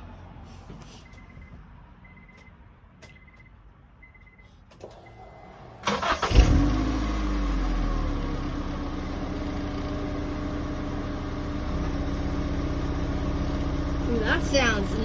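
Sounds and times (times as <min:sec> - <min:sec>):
car engine cranking and idling: 0:04.4 - 0:15.0.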